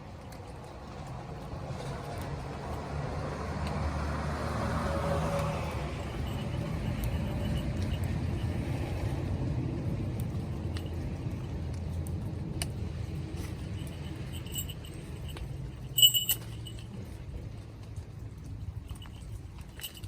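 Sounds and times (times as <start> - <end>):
sheep bell clinking: 5.6 - 9.5, 10.3 - 11.7, 13.2 - 17.1, 18.8 - 20.0.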